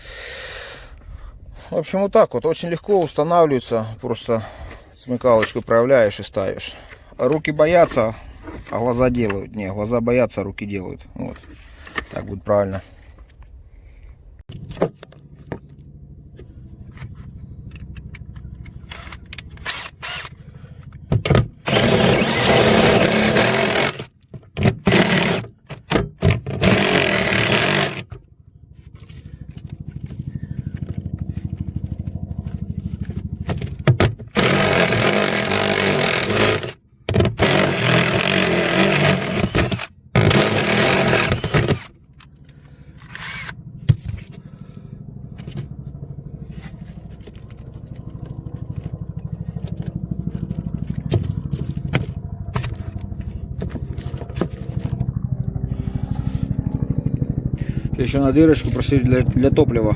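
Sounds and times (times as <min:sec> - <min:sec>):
low hum: 0:12.8 - 0:24.1, 0:26.4 - 0:59.9
power tool bursts: 0:18.9 - 0:20.4, 0:21.6 - 0:25.6, 0:26.3 - 0:28.2, 0:34.2 - 0:41.9, 0:43.0 - 0:43.6.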